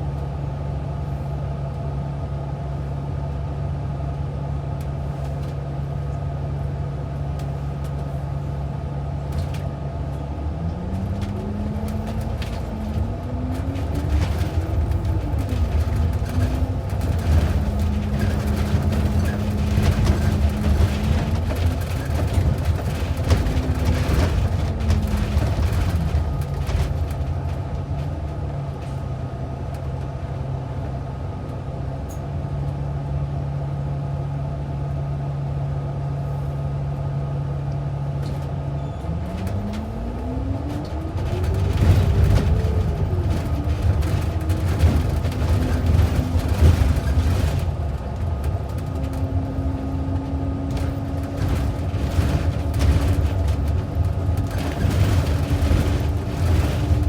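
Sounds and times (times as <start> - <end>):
bus engine idling and pulling away: 0.0 - 57.0
cabin rattles and clicks: 9.2 - 30.2, 39.2 - 57.0.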